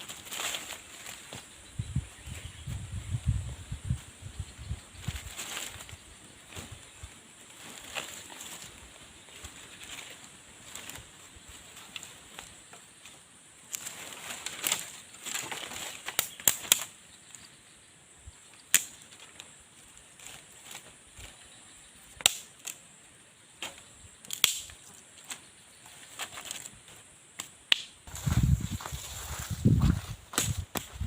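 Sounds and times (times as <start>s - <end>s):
dry wood cracking and snapping: 13.7s - 16.9s, 22.2s - 22.8s, 23.6s - 24.9s, 27.4s - 28.2s.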